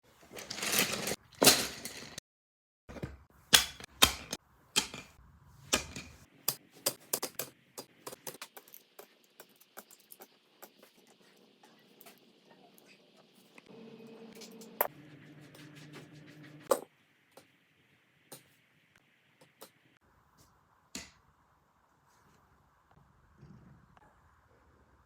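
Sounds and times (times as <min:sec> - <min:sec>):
pencils clattering and rolling: 0:00.1 - 0:02.2, 0:03.5 - 0:13.6.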